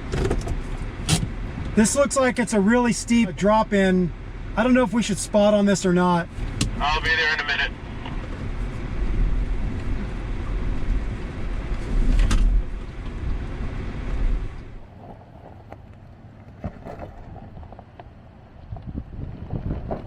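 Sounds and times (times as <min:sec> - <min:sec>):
vehicle engine rumble: 0:00.0 - 0:20.0
wind on microphone: 0:18.6 - 0:20.0.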